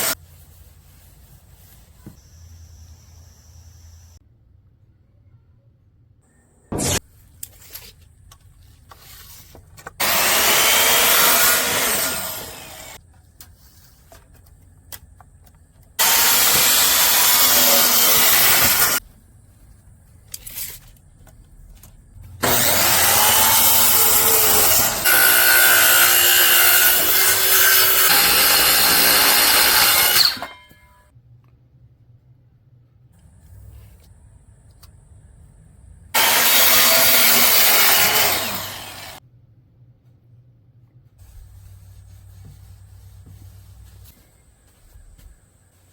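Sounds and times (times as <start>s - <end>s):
power saw cutting wood: 10.0s - 13.0s, 16.0s - 19.0s, 22.4s - 30.5s, 36.2s - 39.2s.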